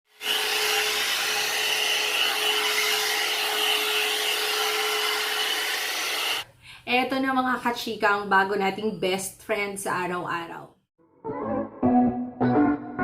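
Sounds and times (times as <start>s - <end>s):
hair dryer running: 0.1s - 6.5s.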